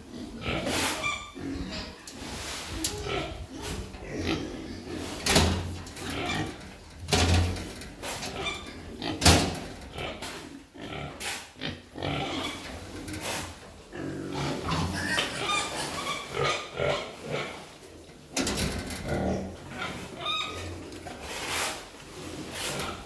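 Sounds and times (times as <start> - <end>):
pigs grunting and squealing: 0.0 - 23.0.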